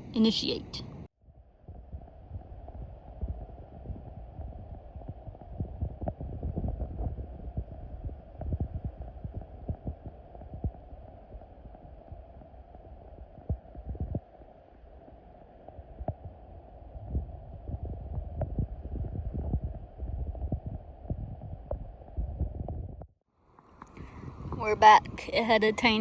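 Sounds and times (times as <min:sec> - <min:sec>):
muffled underwater rumble: 0:00.0 - 0:26.0
low underwater knocks and thumps: 0:17.1 - 0:23.1.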